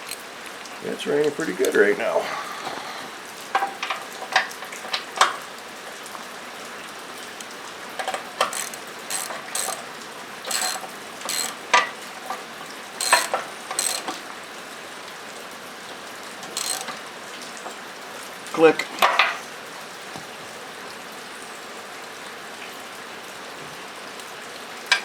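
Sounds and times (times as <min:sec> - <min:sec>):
socket ratchet clicking: 0:00.0 - 0:00.2, 0:08.4 - 0:09.9, 0:10.5 - 0:11.6, 0:13.0 - 0:14.2, 0:16.6 - 0:17.0
rain on a metal roof: 0:00.0 - 0:25.0.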